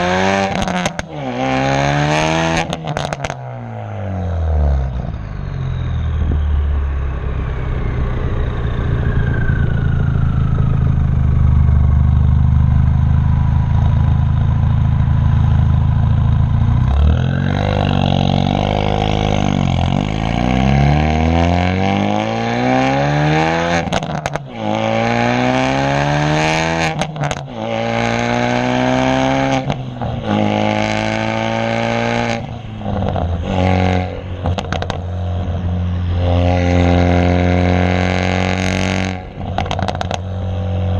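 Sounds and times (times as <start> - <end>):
car exhaust revving: 0.0 - 40.9
high whine: 3.6 - 25.1, 29.3 - 40.9
exhaust cracks and pops: 23.9 - 24.4, 39.5 - 40.3.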